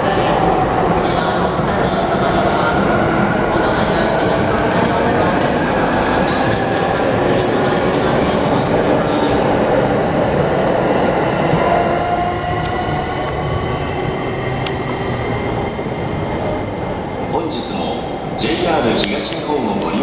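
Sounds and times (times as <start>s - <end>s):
electric train accelerating: 0.0s - 20.0s.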